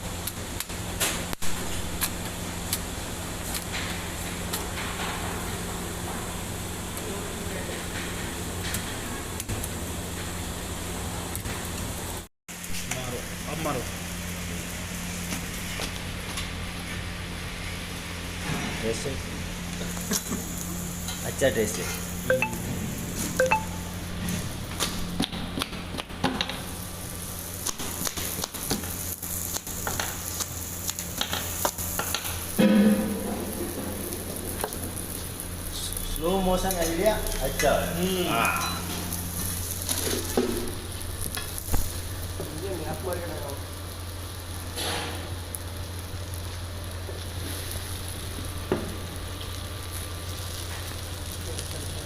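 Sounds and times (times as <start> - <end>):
food sizzling in a pan: 19.4 - 25.0, 26.6 - 52.0.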